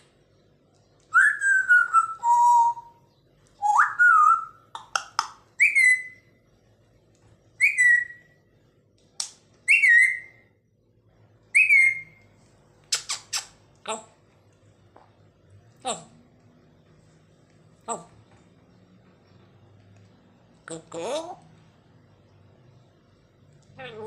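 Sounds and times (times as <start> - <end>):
parrot whistling: 1.1 - 3.0, 3.6 - 4.6, 5.6 - 6.2, 7.6 - 8.3, 9.6 - 10.4, 11.5 - 12.2.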